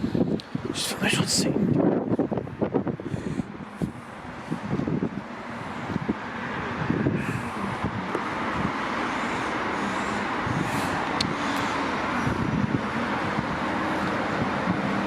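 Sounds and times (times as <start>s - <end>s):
train rumbling past: 3.4s - 15.0s.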